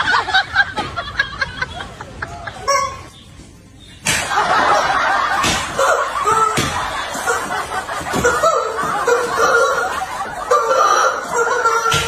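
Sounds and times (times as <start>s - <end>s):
people laughing: 0.0s - 3.2s, 4.1s - 12.0s
voices: 0.0s - 12.0s.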